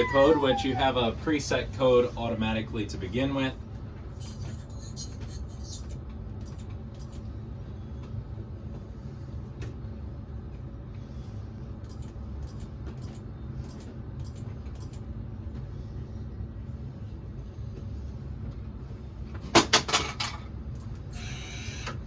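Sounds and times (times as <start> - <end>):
low background rumble: 0.0 - 12.5.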